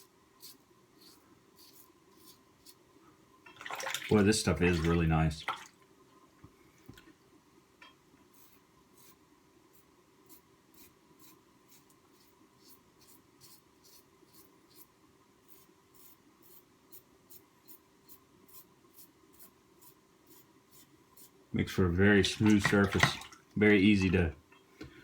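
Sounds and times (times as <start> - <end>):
razor scraping through stubble: 0.4 - 2.8.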